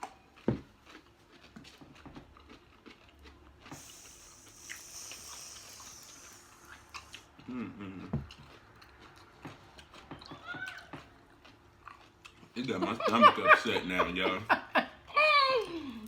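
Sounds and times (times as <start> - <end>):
chewing and crunching pickles: 0.0 - 14.3
vocal groan: 7.4 - 8.2.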